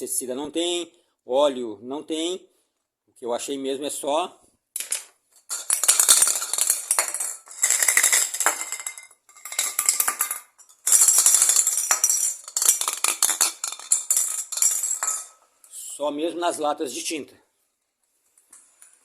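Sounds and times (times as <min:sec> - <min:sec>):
spray paint can rattling: 0:05.4 - 0:15.3.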